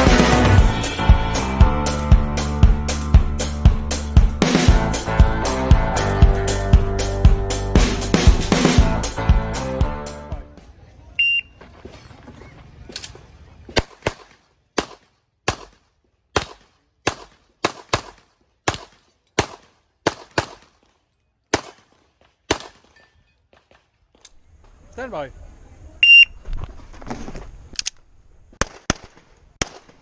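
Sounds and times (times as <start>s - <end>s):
music: 0.0s - 10.6s
shot timer beep: 11.2s - 11.6s
handgun shots: 16.4s - 20.7s, 21.5s - 23.0s.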